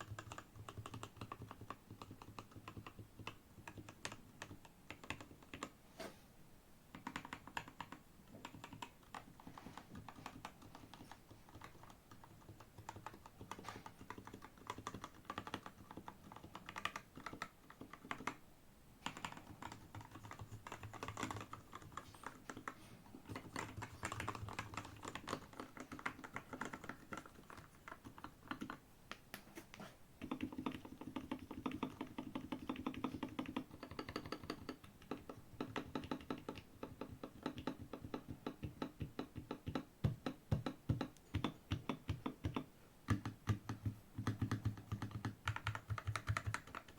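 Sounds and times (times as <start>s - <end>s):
mechanical keyboard typing: 0.0s - 5.7s, 6.9s - 18.4s, 19.0s - 28.8s, 30.2s - 46.9s.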